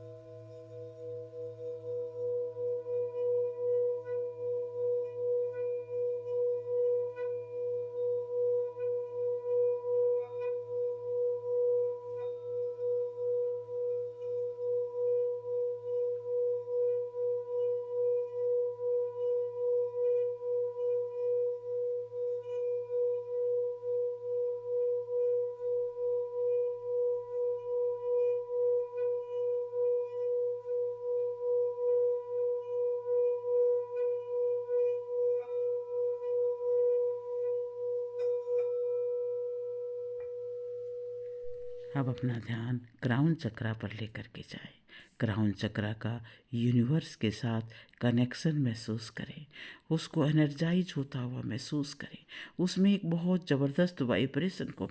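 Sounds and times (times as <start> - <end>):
singing bowl ringing: 0.0 - 42.4.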